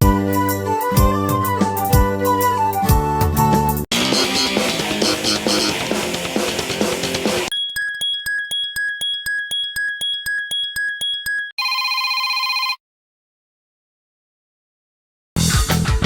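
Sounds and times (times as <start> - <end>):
short buzzing tone: 3.9 - 5.9
electronic ringtone beeps: 4.0 - 5.8, 7.5 - 12.8.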